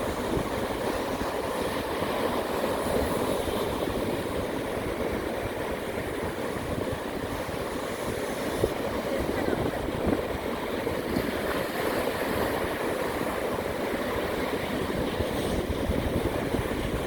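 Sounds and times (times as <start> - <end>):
surf breaking on a beach: 0.0 - 17.0
wind rumbling on microphone: 0.0 - 17.0.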